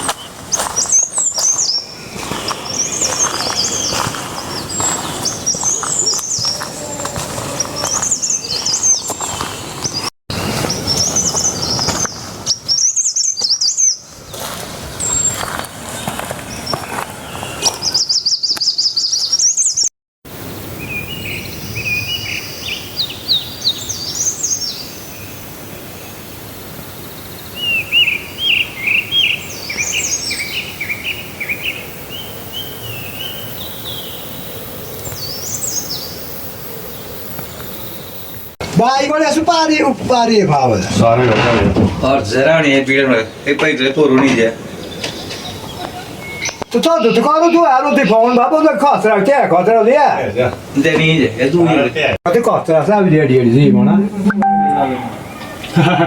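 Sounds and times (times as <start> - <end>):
songbirds chirping and singing: 0.0 - 14.4, 27.4 - 49.3.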